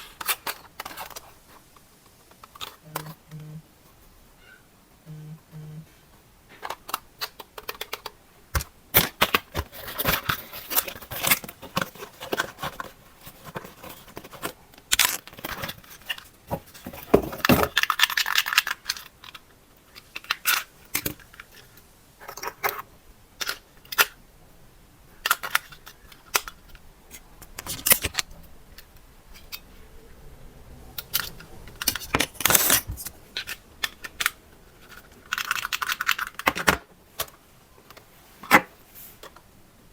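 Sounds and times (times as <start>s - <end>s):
plastic parts clicking and rattling: 0.0s - 3.3s, 6.5s - 24.2s, 25.2s - 29.7s, 31.0s - 39.5s
packaging rustling: 9.0s - 22.8s, 31.0s - 39.4s.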